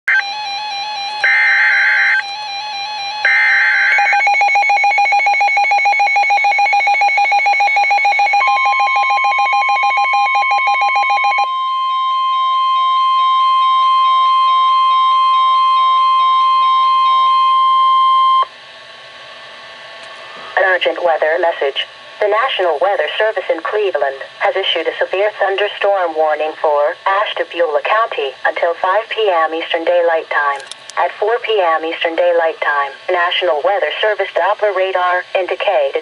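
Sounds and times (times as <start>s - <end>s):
steady alarm tone: 0.1s - 18.5s
faint hum: 0.1s - 36.0s.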